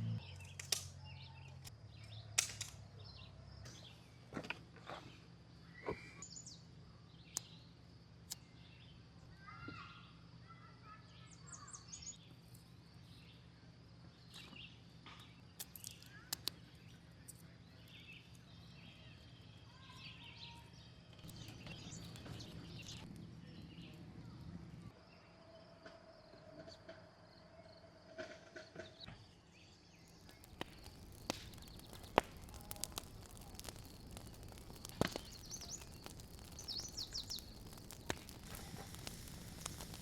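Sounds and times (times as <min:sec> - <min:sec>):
birds chirping: 0:14.3 - 0:24.5, 0:29.6 - 0:40.0
sharp clicks: 0:30.1 - 0:40.0.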